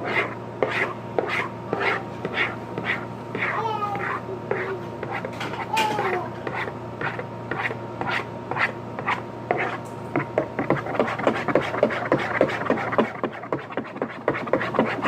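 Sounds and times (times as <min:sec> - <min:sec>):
spoon stirring glue in a bowl: 0:06.4 - 0:15.0.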